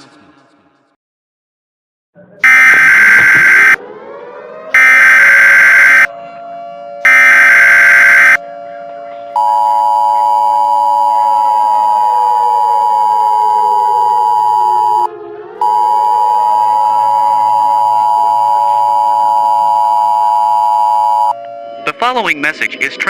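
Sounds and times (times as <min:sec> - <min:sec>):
two-tone attention signal: 0:02.4 - 0:03.8, 0:04.8 - 0:06.1, 0:07.1 - 0:08.4, 0:09.4 - 0:21.4
warbling data burst: 0:02.4 - 0:03.8, 0:04.8 - 0:06.1, 0:07.1 - 0:08.4.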